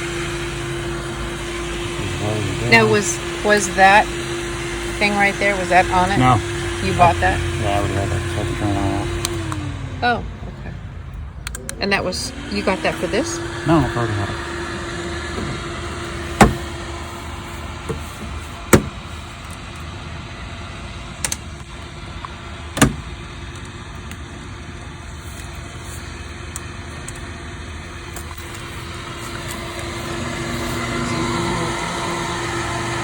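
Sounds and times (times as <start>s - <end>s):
electric fan humming: 0.0s - 33.0s.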